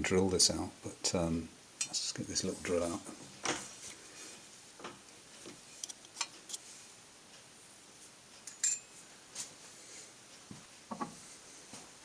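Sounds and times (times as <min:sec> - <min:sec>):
metal tools clinking: 0:08.5 - 0:08.9.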